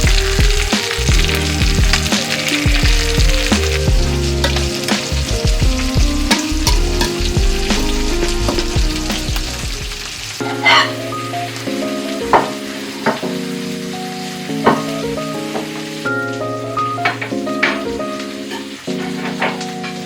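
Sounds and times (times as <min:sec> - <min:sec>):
food sizzling in a pan: 0:00.0 - 0:20.0
keyboard and bass music: 0:00.0 - 0:20.0
utensil tapping and scraping pan: 0:04.4 - 0:05.2, 0:06.3 - 0:07.3.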